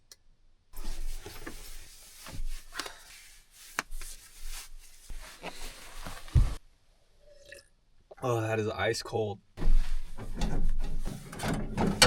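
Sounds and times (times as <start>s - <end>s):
bedding and clothes rustling: 0.8s - 6.6s, 9.6s - 12.0s.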